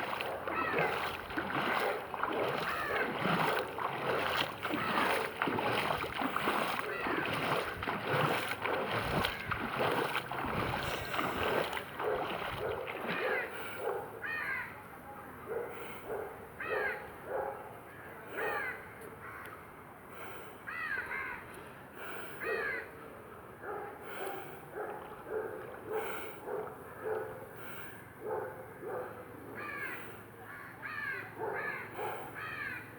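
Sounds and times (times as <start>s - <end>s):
crows cawing: 0.0s - 10.2s, 14.2s - 14.7s, 20.7s - 21.4s, 29.6s - 32.9s
water sloshing and splashing: 0.0s - 13.8s, 24.1s - 27.4s.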